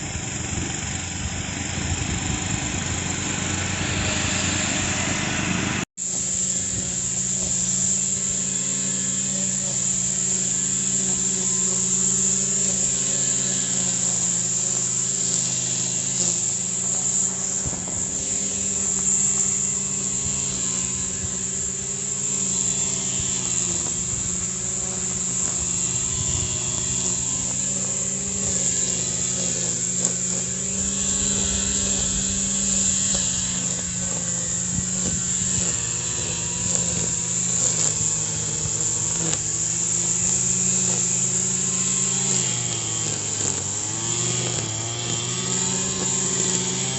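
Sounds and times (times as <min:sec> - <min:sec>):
constant high hiss: 0:00.0 - 0:46.9
lawn mower engine cutting: 0:00.0 - 0:46.9.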